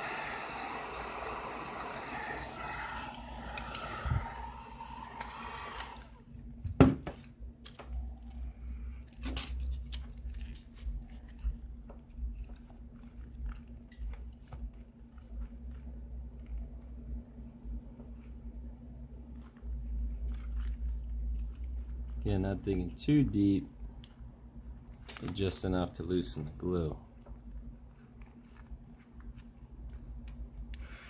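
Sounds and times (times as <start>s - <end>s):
heat gun blowing air: 0.0s - 6.2s.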